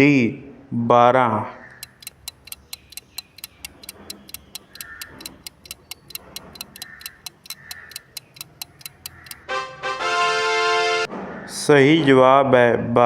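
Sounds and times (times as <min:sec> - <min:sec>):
clock ticking fast: 0:01.7 - 0:09.5.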